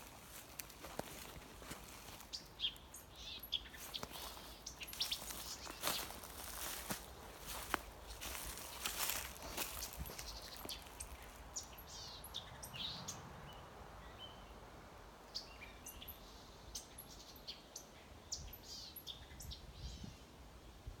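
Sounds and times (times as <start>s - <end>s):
small bird chirping: 0.4s - 13.2s.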